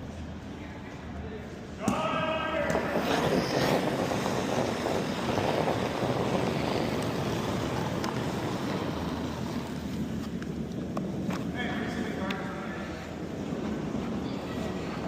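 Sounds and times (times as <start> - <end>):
curling stone sliding on ice: 2.7 - 11.5.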